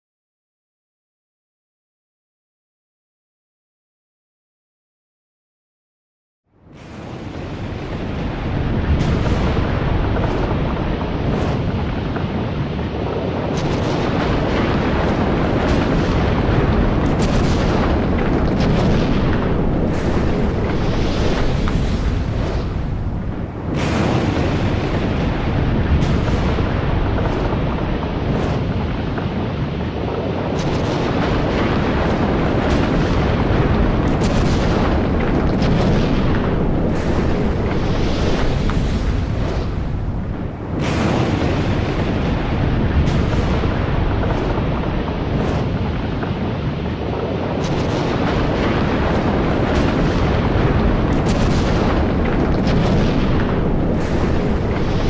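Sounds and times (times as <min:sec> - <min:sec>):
low lava rumble: 0:06.7 - 0:55.0
low rush of fountaining magma: 0:06.8 - 0:55.0
lava popping and splattering: 0:06.9 - 0:55.0.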